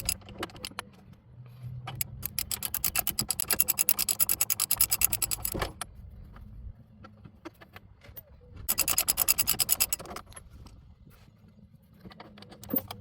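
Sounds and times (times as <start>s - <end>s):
socket ratchet clicking: 0.0s - 0.8s, 1.9s - 5.8s, 8.7s - 10.3s.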